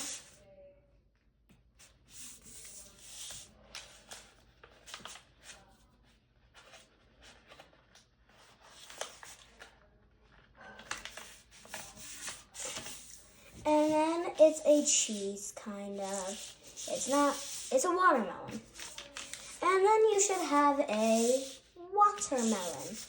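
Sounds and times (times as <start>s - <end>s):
paper rustling and crinkling: 2.4s - 5.6s, 6.5s - 14.0s, 16.0s - 23.0s.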